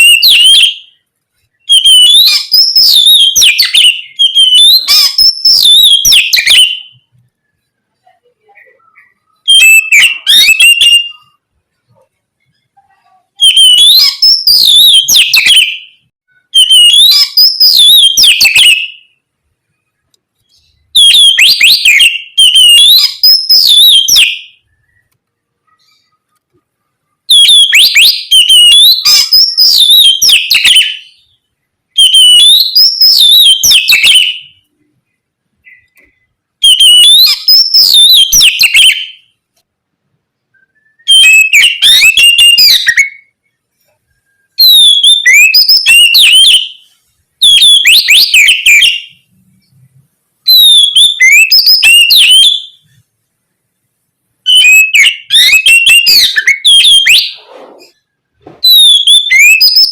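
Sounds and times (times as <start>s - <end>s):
bird singing whistled notes: 0.0s - 7.7s, 8.4s - 11.4s, 13.4s - 19.2s, 20.4s - 26.3s, 27.3s - 31.4s, 32.0s - 34.7s, 35.6s - 39.4s, 40.5s - 49.9s, 50.5s - 52.9s, 54.5s - 58.0s, 58.6s - 59.9s.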